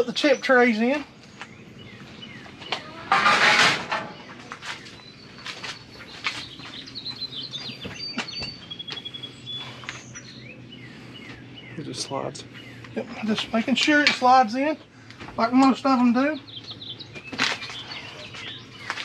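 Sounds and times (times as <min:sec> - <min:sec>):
birds chirping: 0:00.0 - 0:19.0
metal scraping: 0:02.9 - 0:04.3.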